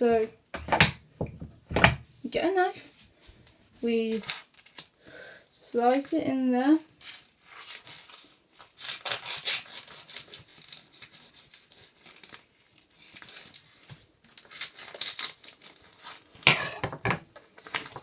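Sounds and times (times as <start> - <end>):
plastic packet crinkling and tearing: 7.0 - 16.4, 17.6 - 18.0.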